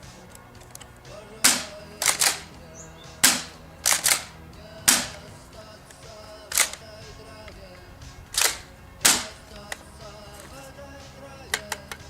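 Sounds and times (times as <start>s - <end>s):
shotgun pump clacking: 0.3s - 2.6s, 3.2s - 10.6s, 11.4s - 12.0s
airsoft shotgun shots: 1.4s - 2.6s, 3.2s - 5.3s, 6.5s - 6.9s, 8.3s - 9.6s.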